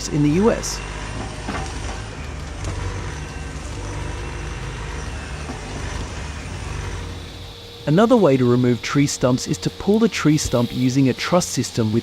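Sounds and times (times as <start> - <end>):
diesel engine under load: 0.0 - 12.0.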